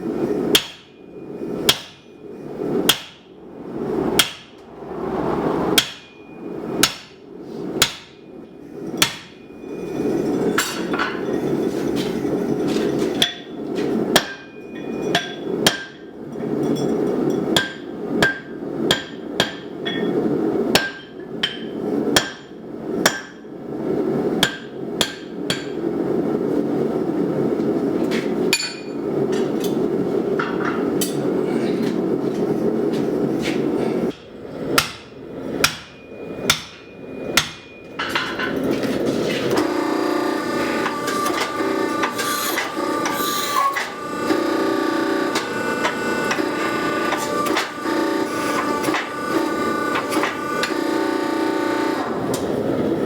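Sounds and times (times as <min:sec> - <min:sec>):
hammer striking steel on anvil: 0:00.5 - 0:02.2, 0:02.8 - 0:03.4, 0:04.2 - 0:04.6, 0:05.8 - 0:07.2, 0:07.8 - 0:08.3, 0:09.0 - 0:09.5, 0:14.2 - 0:16.0, 0:17.6 - 0:20.2, 0:20.8 - 0:23.4, 0:24.4 - 0:25.8, 0:34.1 - 0:38.5
steady rushing noise: 0:02.3 - 0:07.4.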